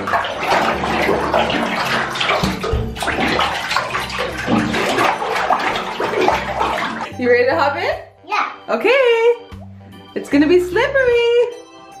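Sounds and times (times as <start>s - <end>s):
bathwater sloshing by hand: 0.0s - 7.7s.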